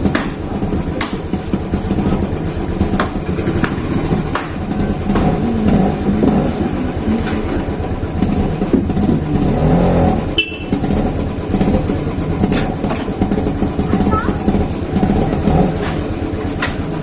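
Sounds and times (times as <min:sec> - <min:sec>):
motor running with pulsing: 0:01.6 - 0:10.0
short high beep: 0:10.4 - 0:10.7.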